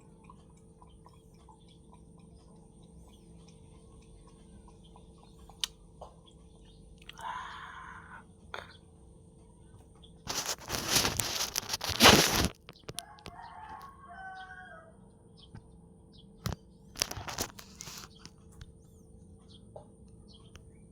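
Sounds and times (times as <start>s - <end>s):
rooster crowing: 13.0s - 15.1s.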